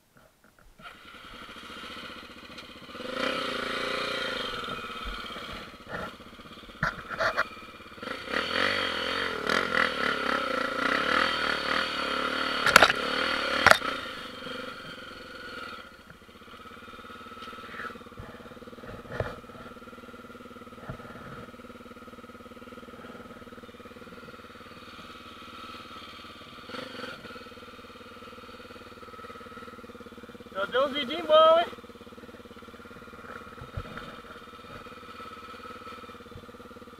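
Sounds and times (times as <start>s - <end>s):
motorcycle engine revving: 0.8s - 36.9s.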